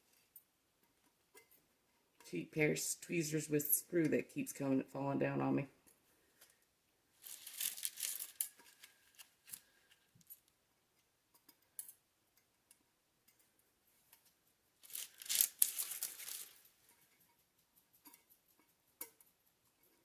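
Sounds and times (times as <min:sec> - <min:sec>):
tape ripping off paper: 0:07.2 - 0:09.6, 0:14.8 - 0:16.6
small clicks and taps: 0:07.7 - 0:20.0.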